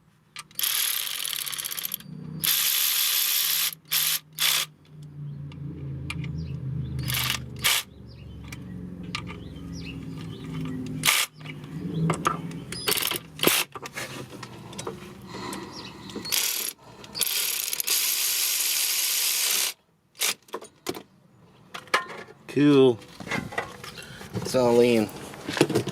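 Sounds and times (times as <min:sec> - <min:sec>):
hand ratchet clicking: 0:00.4 - 0:04.7, 0:07.0 - 0:07.9, 0:16.2 - 0:20.4.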